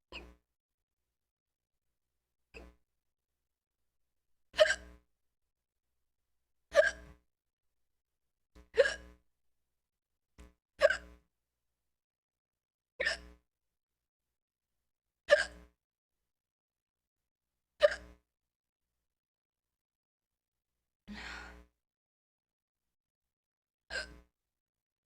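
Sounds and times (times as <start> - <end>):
person hiccuping: 4.6 - 4.8, 6.7 - 7.0, 8.8 - 9.0, 10.8 - 11.1, 13.0 - 13.3, 15.3 - 15.6, 17.8 - 18.0.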